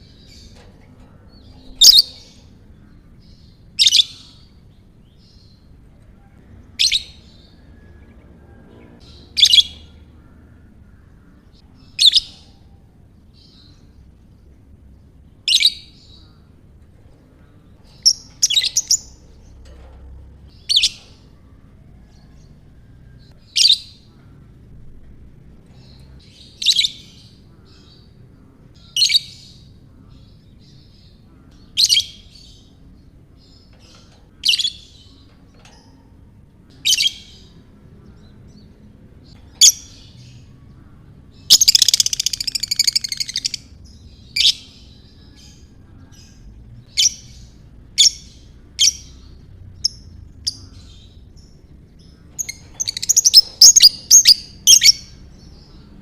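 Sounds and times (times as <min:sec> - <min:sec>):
lovebird chirping: 0:00.0 - 0:02.6, 0:17.8 - 0:19.8, 0:41.3 - 0:55.9.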